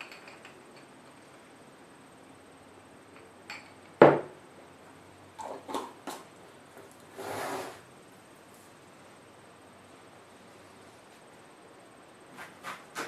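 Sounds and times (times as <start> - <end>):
crunchy eating noises: 5.3 - 7.2.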